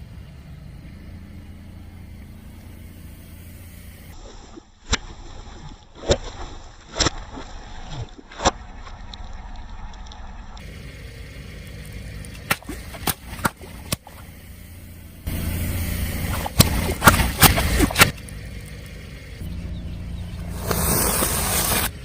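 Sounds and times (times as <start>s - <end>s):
car rumble: 0.0s - 4.2s, 8.6s - 22.0s.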